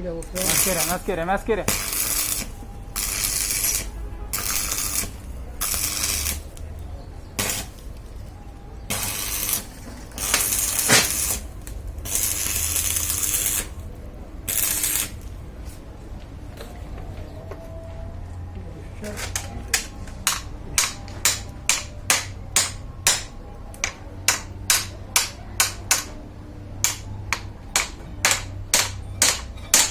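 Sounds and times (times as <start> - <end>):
rasping scraping on metal: 26.8 - 29.9.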